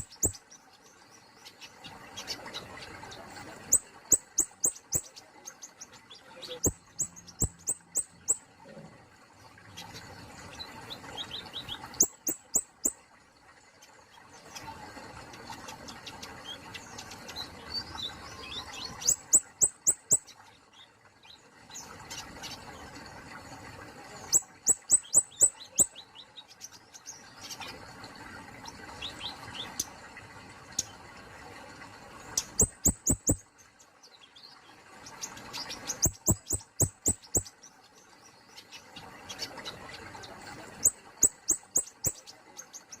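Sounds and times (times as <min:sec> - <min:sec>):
soft high bird chirps: 0:00.0 - 0:08.6, 0:09.8 - 0:13.0, 0:15.4 - 0:21.0, 0:24.2 - 0:27.8, 0:32.3 - 0:43.0
bird clicking notes: 0:32.4 - 0:33.4, 0:36.0 - 0:37.5.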